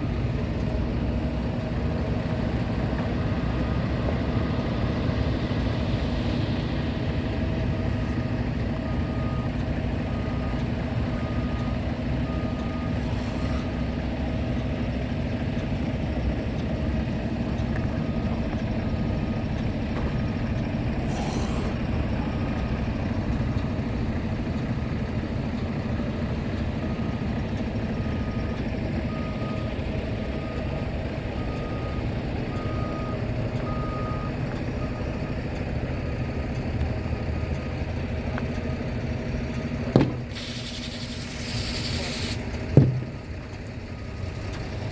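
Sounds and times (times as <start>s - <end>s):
vehicle engine running: 0.0s - 44.9s
brief hiss: 40.3s - 42.5s.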